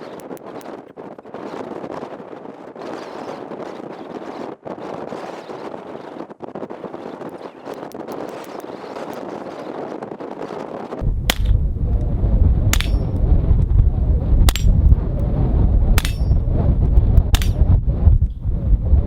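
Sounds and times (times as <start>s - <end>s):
wind buffeting microphone: 0.0s - 19.0s
pistol shots: 11.3s - 11.6s, 12.7s - 13.1s, 16.0s - 16.3s, 17.4s - 17.6s
steel target ringing: 12.7s - 13.2s, 14.5s - 14.8s, 16.0s - 16.4s.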